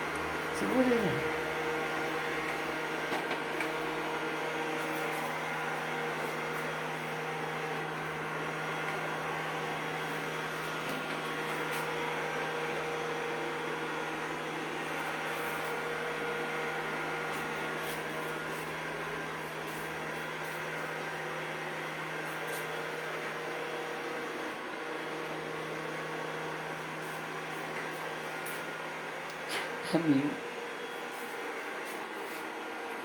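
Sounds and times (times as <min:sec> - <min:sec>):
robot vacuum motor hum: 0:00.0 - 0:33.0.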